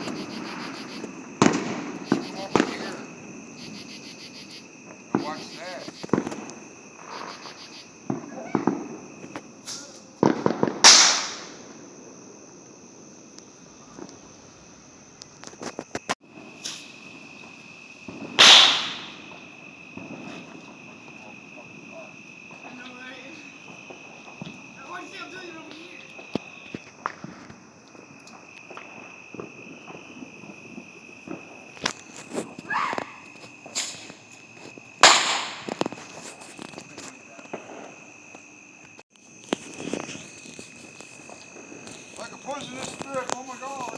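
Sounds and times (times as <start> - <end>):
loud firework bang with hiss: 0.0 - 3.2, 5.1 - 12.1, 16.2 - 21.1, 23.7 - 24.9, 25.7 - 27.6, 28.7 - 34.2, 35.0 - 36.2
fireworks popping and cracking: 0.0 - 3.8, 4.8 - 12.2, 13.2 - 43.9
loud firework bang: 1.4 - 3.1, 8.1 - 11.8, 18.1 - 19.4, 35.0 - 35.8.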